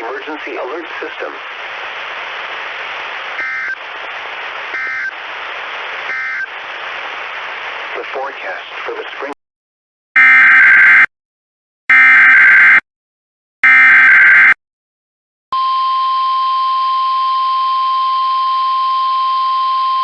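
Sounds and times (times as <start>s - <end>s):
digital data tone bursts: 3.4s - 3.8s, 4.7s - 5.2s, 6.1s - 6.5s
steady warning alarm tone: 3.4s - 3.8s, 4.7s - 5.2s, 6.1s - 6.5s, 10.2s - 11.1s, 11.9s - 12.8s, 13.6s - 14.6s.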